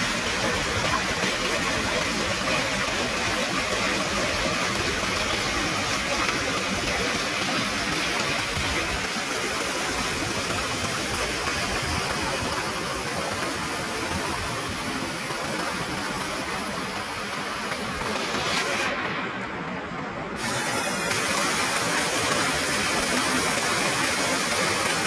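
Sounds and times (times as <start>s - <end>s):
water rushing: 0.0s - 25.0s.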